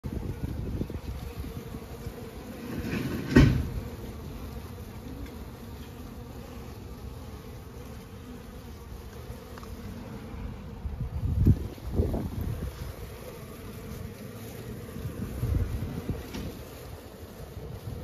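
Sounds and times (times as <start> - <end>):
honeybees buzzing: 0.0 - 18.0.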